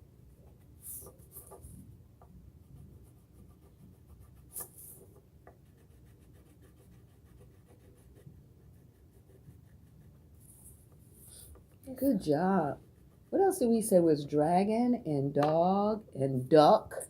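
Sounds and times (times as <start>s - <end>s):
colouring scratches on paper: 0.4s - 1.9s, 2.5s - 14.3s.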